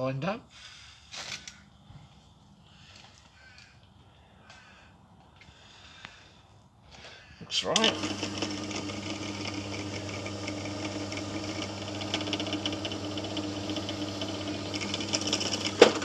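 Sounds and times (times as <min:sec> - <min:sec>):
drill bit grinding through metal: 0:07.7 - 0:16.0
drill press motor humming: 0:07.8 - 0:16.0.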